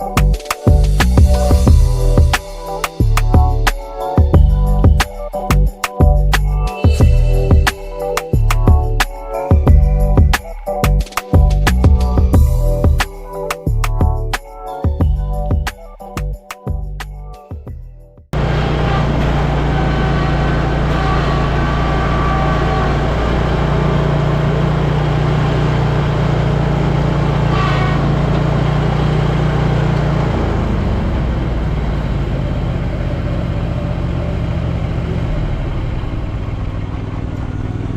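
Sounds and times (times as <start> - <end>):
mower engine running: 18.4 - 37.9.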